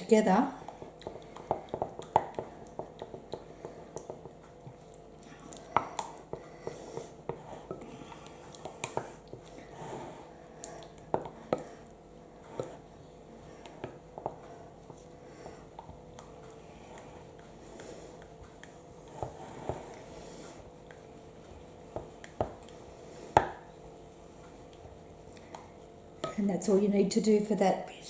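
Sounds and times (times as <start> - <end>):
wet squelching of stirring: 0.0 - 27.2
utensil tapping bowl: 0.5 - 9.5, 10.6 - 11.9, 13.6 - 17.1, 21.9 - 23.7.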